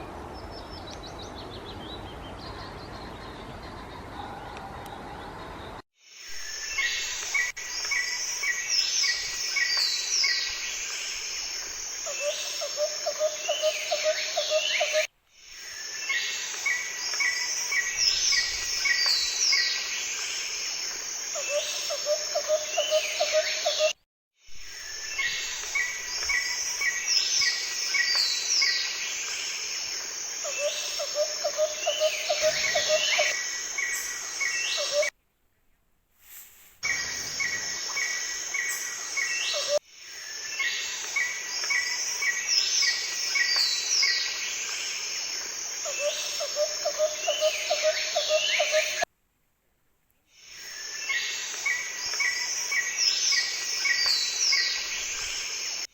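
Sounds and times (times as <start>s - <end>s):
songbirds singing: 0.0s - 20.7s, 24.7s - 35.1s, 36.8s - 49.1s.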